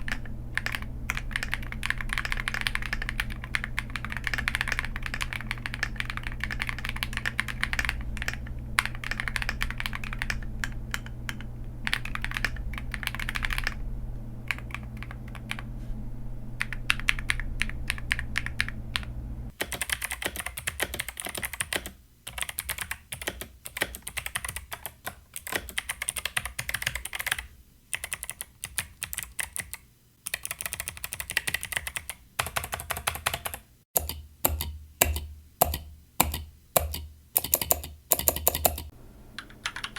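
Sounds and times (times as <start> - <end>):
mechanical keyboard typing: 0.0 - 13.8, 14.5 - 15.7, 16.6 - 39.9
steady low hum: 0.0 - 19.6.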